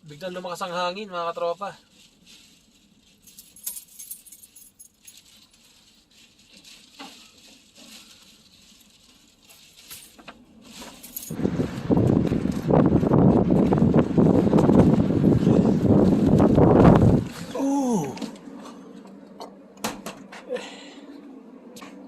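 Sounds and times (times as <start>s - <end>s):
faint clicks and rustles: 1.9s - 12.7s
wind buffeting microphone: 11.4s - 17.4s.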